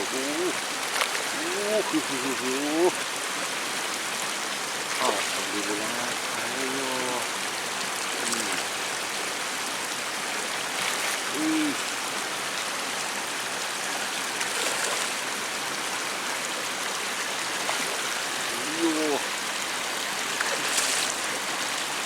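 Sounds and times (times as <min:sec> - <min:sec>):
short voice sound: 0:00.0 - 0:00.6, 0:08.2 - 0:08.6, 0:11.3 - 0:11.8, 0:18.5 - 0:19.2
stream water flowing: 0:00.0 - 0:22.0.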